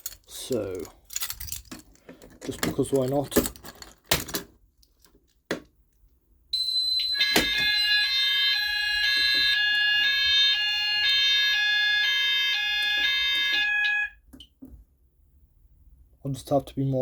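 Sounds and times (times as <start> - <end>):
alternating two-tone alarm: 6.6 - 14.2
steady high alarm tone: 6.6 - 14.2.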